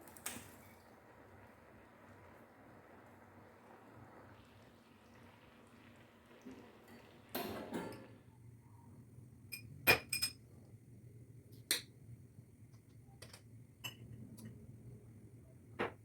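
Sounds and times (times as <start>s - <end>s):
spoon clinking against glass: 9.5s - 10.4s.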